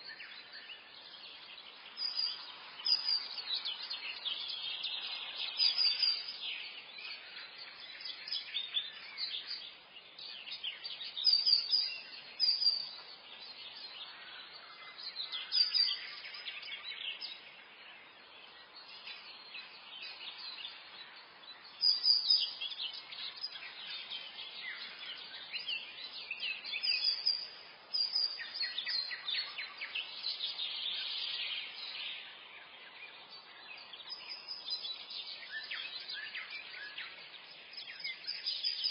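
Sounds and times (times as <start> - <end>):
faint steady hiss: 0.0 - 38.9
songbirds chirping: 0.0 - 38.9.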